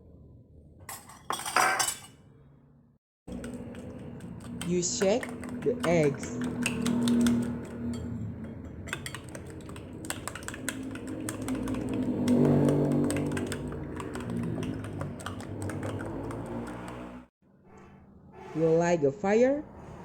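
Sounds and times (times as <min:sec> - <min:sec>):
utensil clicking against bowl: 0:03.3 - 0:16.8.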